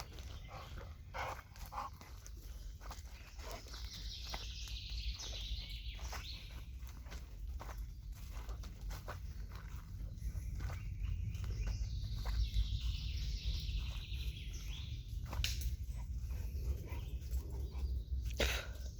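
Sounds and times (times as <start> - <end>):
footsteps: 0.0 - 18.4
forest birds singing: 0.0 - 18.9
dog panting: 0.4 - 2.5
steady low rumble: 6.6 - 18.9.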